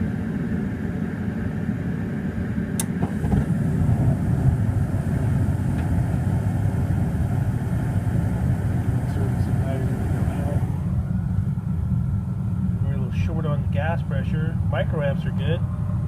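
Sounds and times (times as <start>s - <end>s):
burner rumble: 0.0s - 16.0s
inducer motor humming: 0.0s - 16.0s
furnace ignition click: 2.8s - 10.7s.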